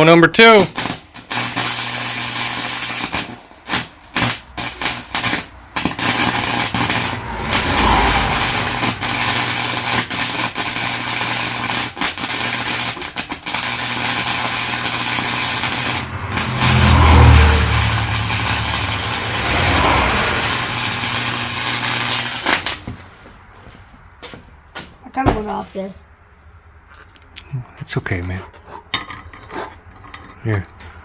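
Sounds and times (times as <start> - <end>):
arc welding crackle: 0.4 - 22.9
low hum: 15.7 - 22.4.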